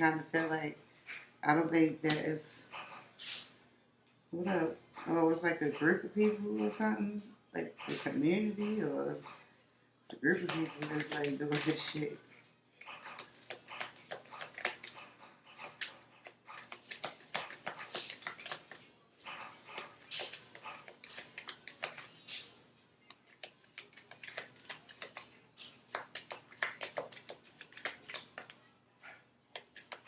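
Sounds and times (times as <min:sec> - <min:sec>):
cards being shuffled: 0:10.4 - 0:12.0, 0:12.8 - 0:15.0, 0:15.6 - 0:22.5, 0:23.1 - 0:28.6, 0:29.5 - 0:30.0.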